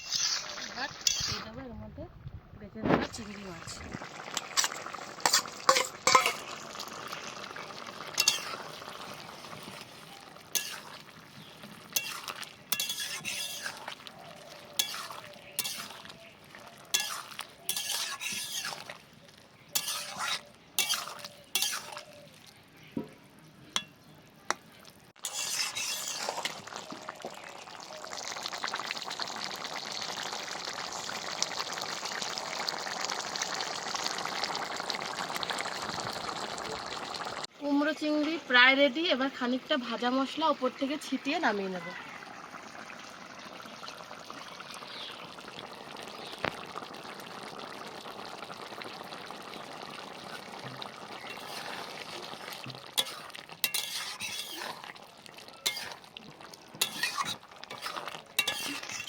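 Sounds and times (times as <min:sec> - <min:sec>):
spatula scraping a pan: 0:00.0 - 0:01.5, 0:04.4 - 0:06.6, 0:08.1 - 0:19.1, 0:19.7 - 0:22.3, 0:25.2 - 0:26.6, 0:51.2 - 0:55.0, 0:55.6 - 0:56.1, 0:56.8 - 0:59.0
curry sizzling: 0:00.0 - 0:02.1, 0:02.7 - 0:59.0
spatula clinking against pan: 0:05.3 - 0:06.4, 0:12.0 - 0:13.7, 0:16.9 - 0:18.8, 0:19.8 - 0:22.1, 0:53.0 - 0:54.6, 0:55.6 - 0:56.0, 0:56.8 - 0:57.8, 0:58.4 - 0:59.0.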